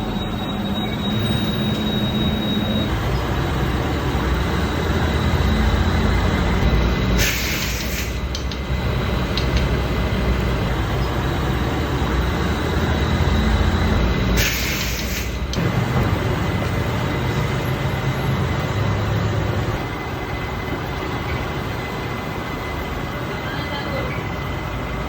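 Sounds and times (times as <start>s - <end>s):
lathe running: 0.0s - 7.3s, 8.1s - 14.5s, 15.2s - 25.0s
hiss: 7.1s - 8.4s, 14.4s - 15.6s.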